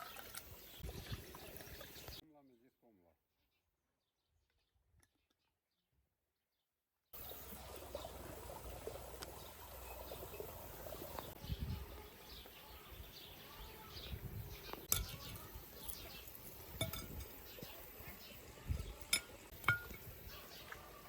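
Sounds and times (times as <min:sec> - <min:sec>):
faint bird chirps: 0:09.4 - 0:19.2.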